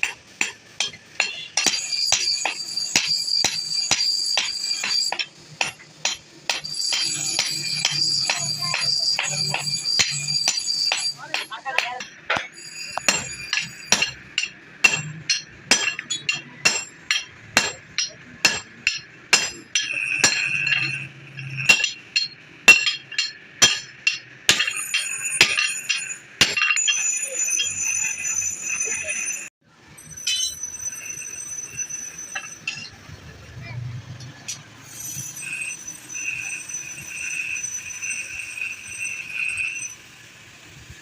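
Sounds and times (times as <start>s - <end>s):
hammer striking steel on anvil: 0.0s - 29.4s, 30.0s - 33.0s
high-pitched metallic ringing: 0.0s - 33.9s, 34.5s - 41.0s.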